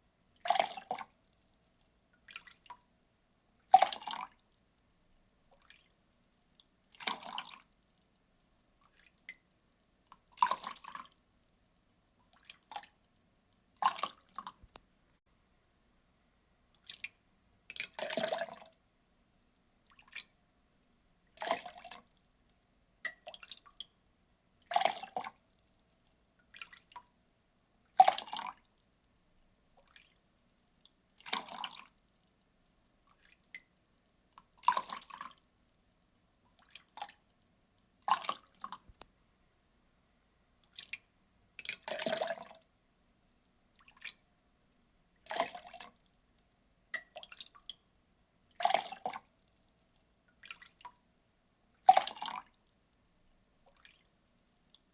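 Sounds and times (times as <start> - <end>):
water dripping and trickling: 0.0 - 14.8, 16.8 - 39.0, 40.7 - 54.9
water pouring in splashes: 6.9 - 7.7, 10.1 - 11.1, 17.7 - 18.7, 21.3 - 22.1, 27.9 - 28.6, 29.8 - 30.2, 31.2 - 32.0, 34.5 - 35.4, 41.6 - 42.6, 43.8 - 44.2, 45.2 - 46.0, 51.8 - 52.5.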